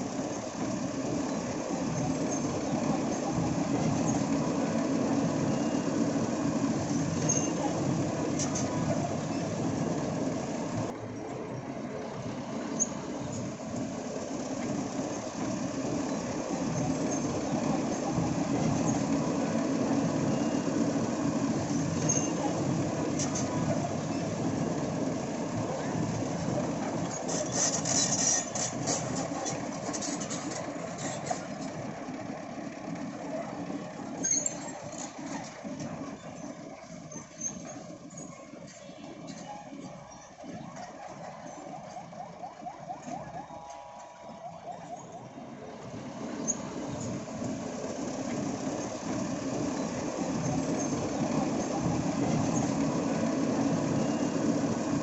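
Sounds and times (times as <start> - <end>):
excavator diesel engine rumbling: 0.0 - 55.0
clatter: 27.0 - 31.7.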